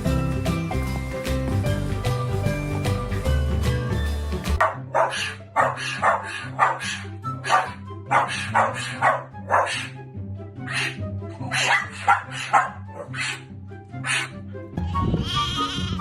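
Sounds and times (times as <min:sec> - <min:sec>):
background music with bass: 0:00.0 - 0:16.0
dog barking: 0:04.6 - 0:10.0, 0:10.6 - 0:14.4.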